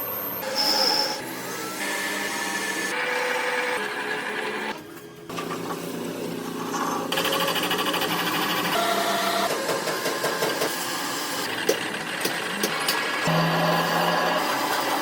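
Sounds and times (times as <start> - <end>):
workshop machinery humming and whining: 0.0 - 15.0.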